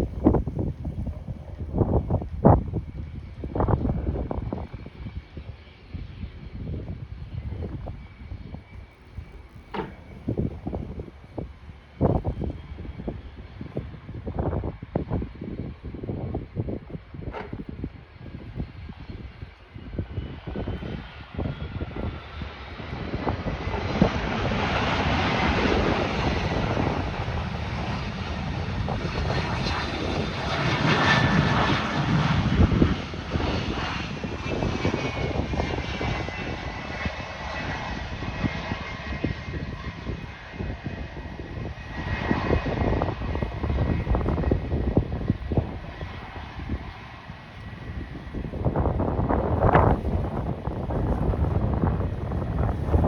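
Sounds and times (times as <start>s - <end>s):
jet landing: 0.0s - 53.0s.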